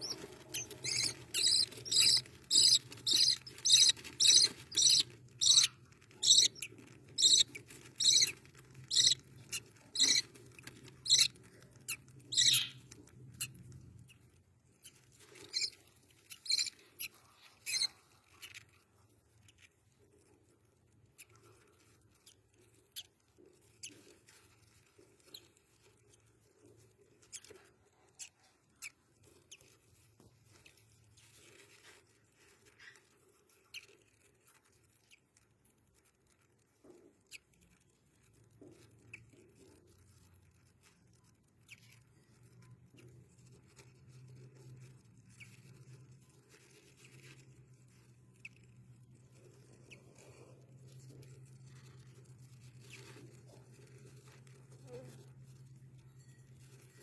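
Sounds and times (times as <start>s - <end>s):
bird chick cheeping: 0.0s - 10.3s, 11.0s - 13.6s, 15.5s - 15.8s, 16.4s - 18.0s.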